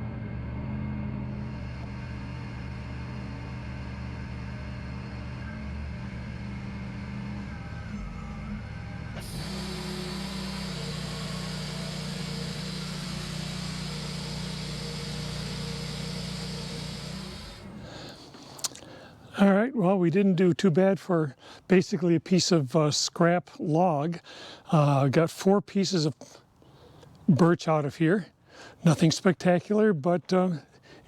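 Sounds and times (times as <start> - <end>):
sawmill engine running: 0.0 - 18.4
band saw blade hissing through log: 9.2 - 18.7.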